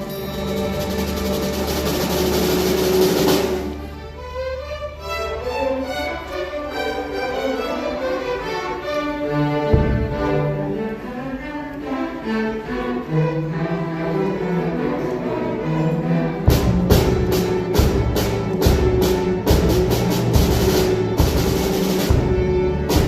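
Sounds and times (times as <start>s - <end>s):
sustained string notes: 0.0s - 23.0s
loud drum strikes: 9.7s - 10.7s, 16.5s - 23.0s.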